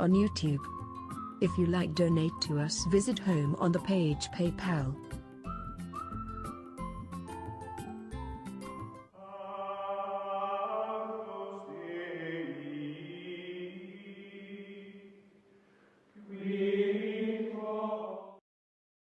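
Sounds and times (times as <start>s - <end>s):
choir-like held chant tones: 9.2s - 15.2s, 16.2s - 18.4s.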